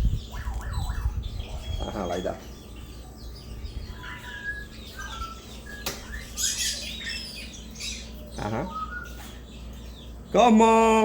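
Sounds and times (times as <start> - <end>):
parrot calling: 0.2 - 2.3, 3.9 - 9.2.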